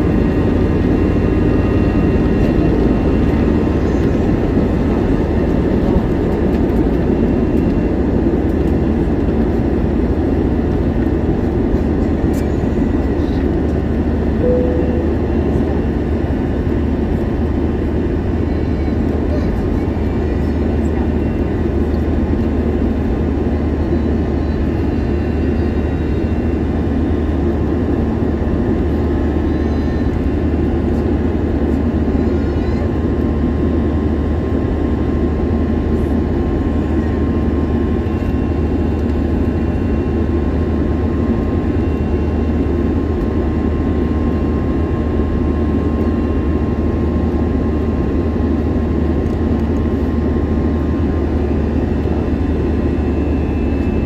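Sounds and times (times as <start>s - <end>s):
aircraft cabin engine rumble: 0.0s - 54.0s
faint steady whine: 14.4s - 15.9s.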